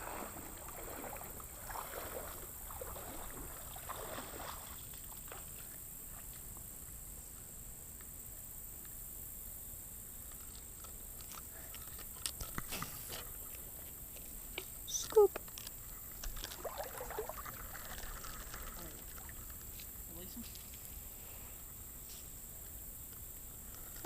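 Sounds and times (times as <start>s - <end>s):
shallow river water splashing: 0.0s - 6.9s, 15.6s - 22.7s.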